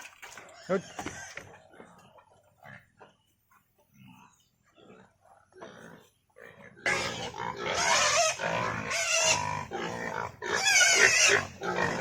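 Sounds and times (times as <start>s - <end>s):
pigs grunting: 0.4s - 3.0s, 3.9s - 12.0s
pigs squealing: 0.5s - 2.0s, 5.6s - 12.0s.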